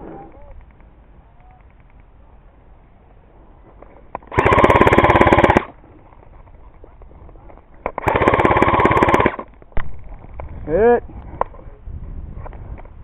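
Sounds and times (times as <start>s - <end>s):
airsoft gun firing bursts: 4.3s - 5.8s, 7.9s - 9.5s.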